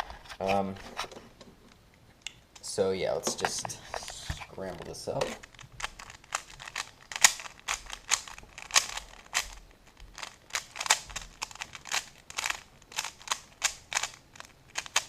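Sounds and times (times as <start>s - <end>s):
puzzle cube plastic clacks: 3.3s - 15.0s.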